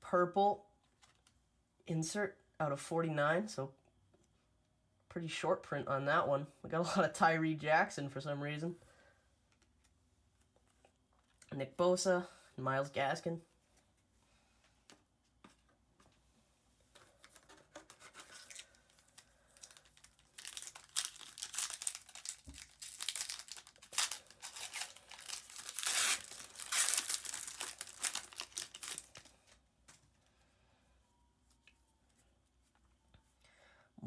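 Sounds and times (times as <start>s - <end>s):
card pack wrapper crinkling and tearing: 17.2s - 29.6s.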